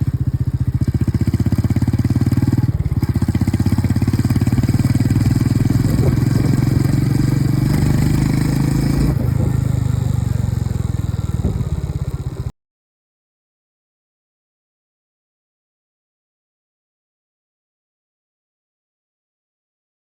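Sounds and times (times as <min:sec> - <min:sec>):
motorcycle engine running: 0:00.0 - 0:12.5.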